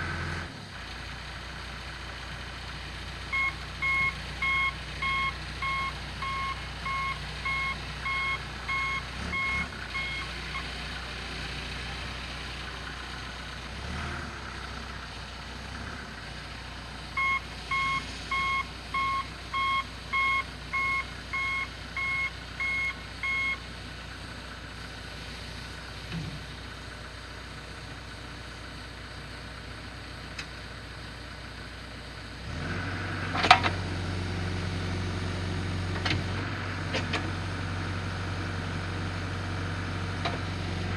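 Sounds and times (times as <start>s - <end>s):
diesel engine running: 0.0s - 40.9s
reverse alarm beeping: 3.3s - 10.6s, 17.2s - 23.6s.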